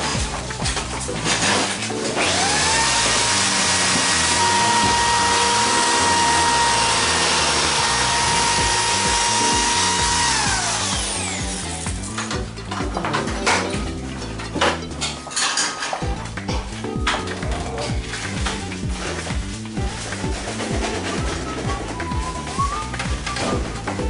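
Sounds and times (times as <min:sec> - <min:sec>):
background music: 0:00.0 - 0:24.0
power tool motor whining: 0:01.2 - 0:12.4.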